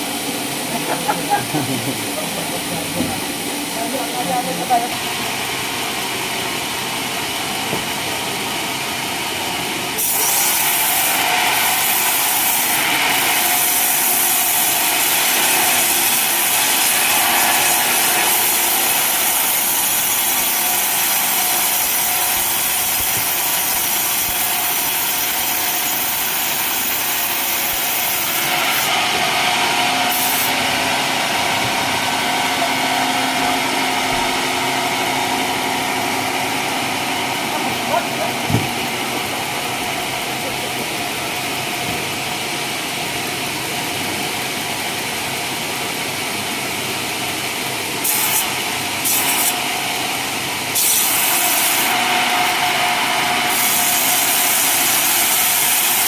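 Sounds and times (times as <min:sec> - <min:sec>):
sawmill machine running: 0:00.0 - 0:56.0
saw blade cutting wood: 0:10.0 - 0:40.1, 0:48.0 - 0:56.0.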